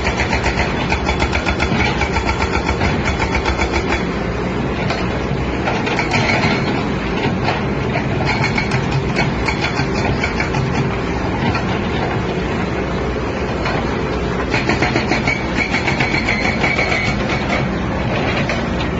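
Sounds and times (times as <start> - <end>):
hydraulic breaker hammering: 0.0 - 4.1
diesel engine drone: 0.0 - 18.9.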